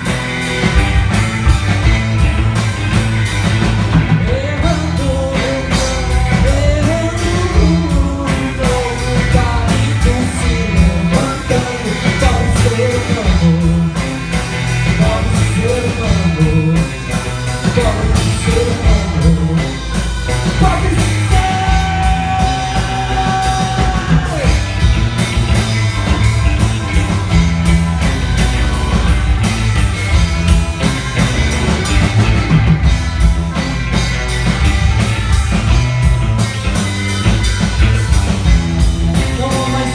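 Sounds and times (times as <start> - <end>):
rock band playing live: 0.0 - 39.9
person singing: 4.2 - 24.7, 38.8 - 39.9.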